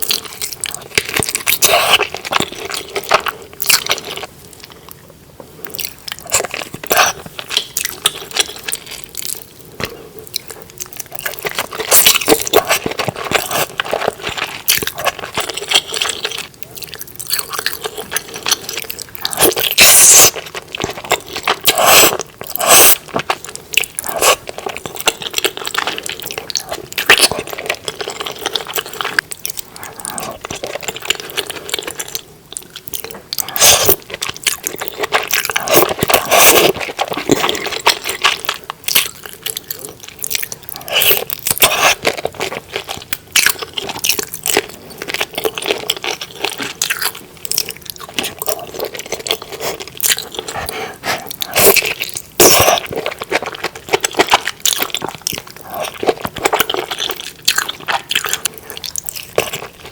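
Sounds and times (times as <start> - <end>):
chewing seafood: 0.0 - 59.9
crunches while eating: 32.7 - 59.9.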